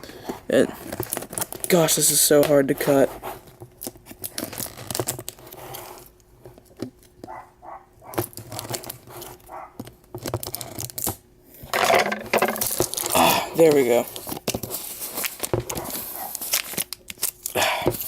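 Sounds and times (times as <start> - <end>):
plastic packaging crinkling and tearing: 0.8 - 2.3, 3.8 - 5.5, 8.2 - 9.4, 14.1 - 17.6.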